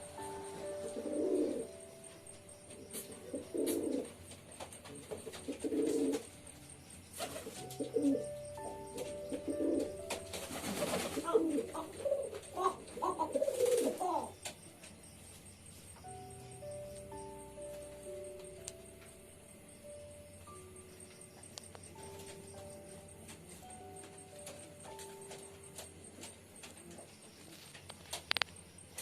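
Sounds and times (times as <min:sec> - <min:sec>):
pigeons cooing: 0:00.0 - 0:01.8, 0:02.9 - 0:04.2, 0:04.9 - 0:06.3, 0:07.2 - 0:08.4, 0:09.0 - 0:14.4.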